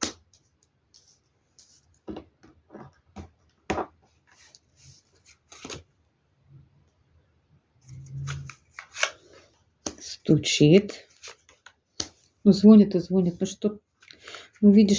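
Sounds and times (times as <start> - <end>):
cards shuffling and slapping: 0.0 - 2.2, 3.2 - 5.9, 8.3 - 10.1, 11.1 - 12.4.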